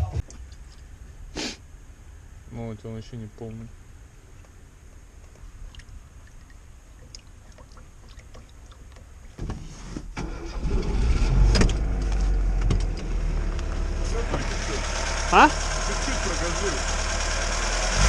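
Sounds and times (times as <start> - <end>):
car engine starting and idling: 10.1 - 18.0.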